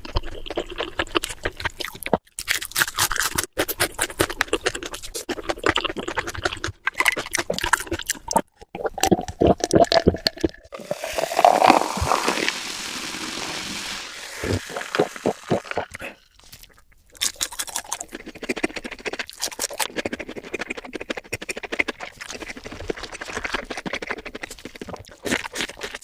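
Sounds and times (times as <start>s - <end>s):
crunchy fried food chewing: 0.0s - 13.4s, 14.4s - 26.0s.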